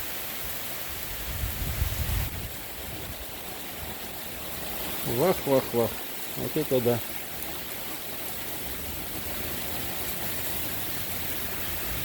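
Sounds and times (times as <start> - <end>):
heavy rain pouring: 0.0 - 12.0
wind rumbling on microphone: 0.4 - 5.1.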